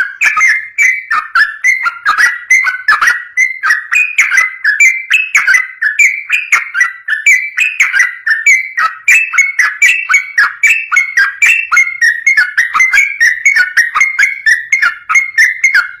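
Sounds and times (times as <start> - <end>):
bulbul singing bubbling whistles: 0.0 - 16.0.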